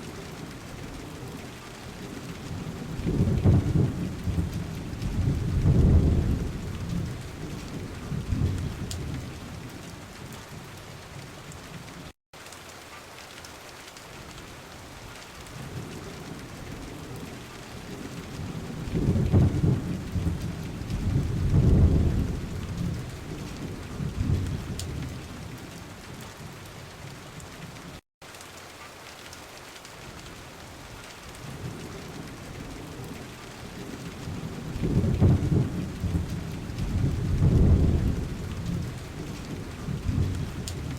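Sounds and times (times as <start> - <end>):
steady rain: 0.0 - 40.9
rolling thunder: 2.0 - 9.8, 15.6 - 25.7, 31.4 - 40.9.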